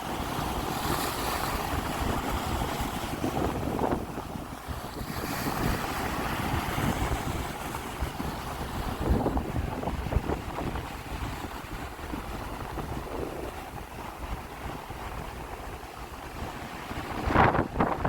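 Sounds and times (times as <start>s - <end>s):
sea waves washing onto shore: 0.0s - 18.0s
wind buffeting microphone: 0.0s - 18.0s.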